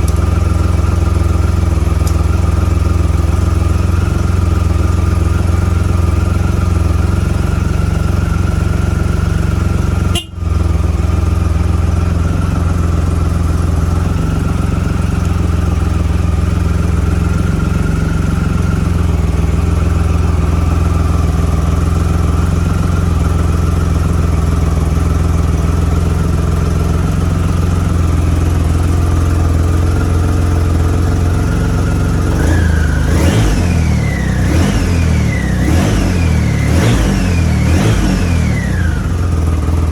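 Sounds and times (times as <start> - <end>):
motorcycle engine idling: 0.0 - 39.9
engine revving: 31.2 - 39.4.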